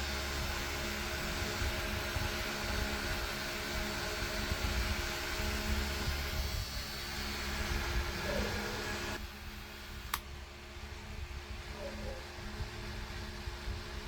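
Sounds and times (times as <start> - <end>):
small electric motor humming: 0.0 - 14.0
single click: 10.0 - 10.3.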